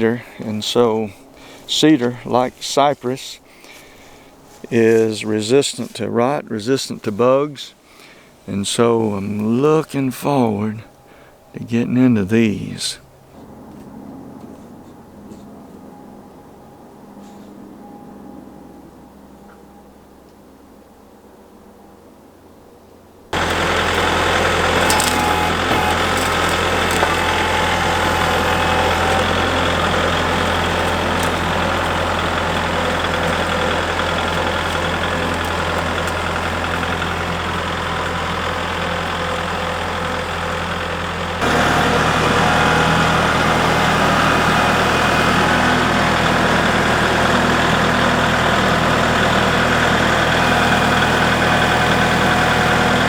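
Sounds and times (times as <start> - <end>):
sawmill engine running: 23.4 - 53.0.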